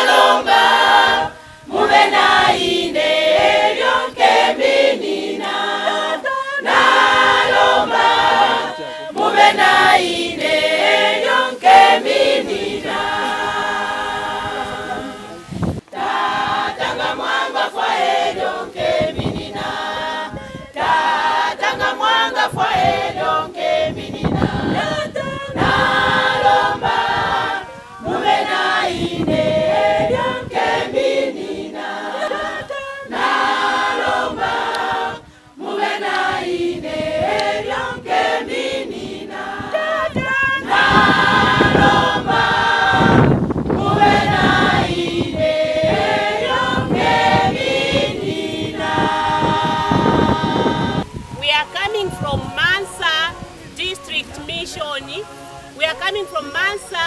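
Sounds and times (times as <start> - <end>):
choir singing a cappella: 0.0 - 57.0.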